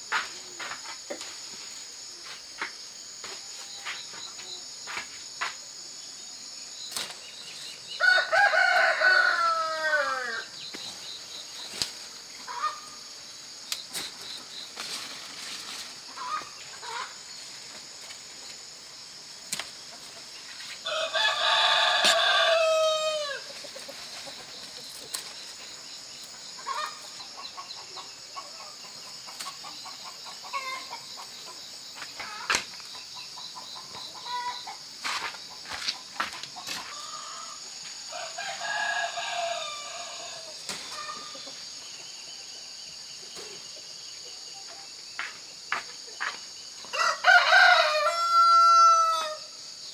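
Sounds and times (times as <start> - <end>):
insect buzz: 0.0 - 49.9
rooster crowing: 8.0 - 10.5, 20.8 - 23.5, 36.8 - 41.3, 46.9 - 49.6
chicken clucking: 26.6 - 31.6.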